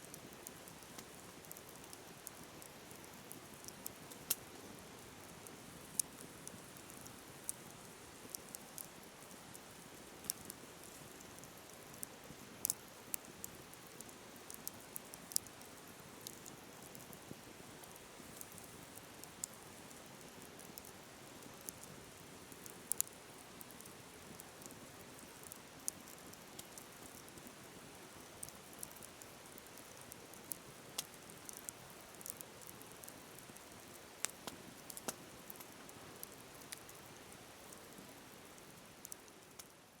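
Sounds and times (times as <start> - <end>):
campfire crackling and popping: 0.0 - 39.8.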